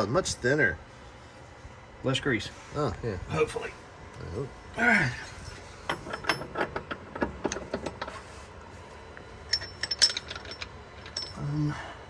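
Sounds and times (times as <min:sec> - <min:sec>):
metal tools clinking: 0:05.1 - 0:08.2, 0:09.5 - 0:11.7.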